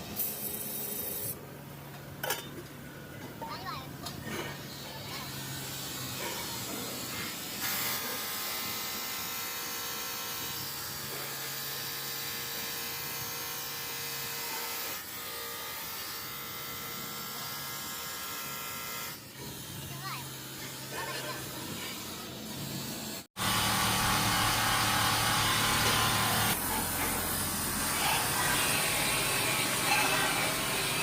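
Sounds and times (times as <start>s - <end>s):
factory machine whining: 22.0s - 31.0s.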